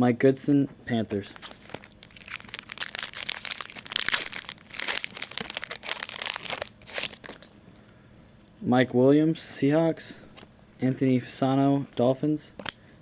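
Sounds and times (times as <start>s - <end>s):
plastic wrapper crinkling: 1.4s - 7.6s.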